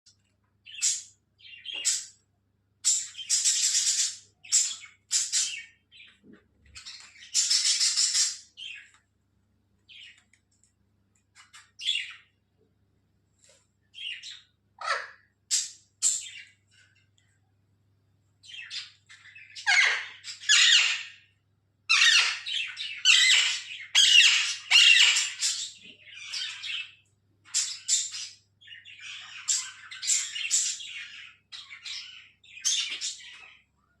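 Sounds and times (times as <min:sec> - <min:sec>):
parakeet squawking: 0:06.8 - 0:08.8, 0:14.0 - 0:16.4, 0:18.5 - 0:21.3, 0:21.9 - 0:26.9.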